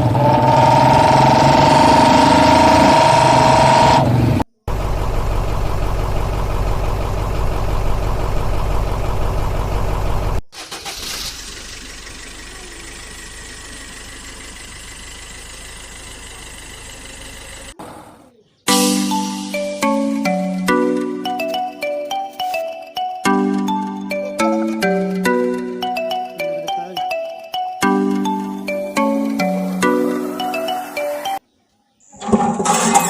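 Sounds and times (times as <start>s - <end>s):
pulsing engine running: 0.0s - 17.8s.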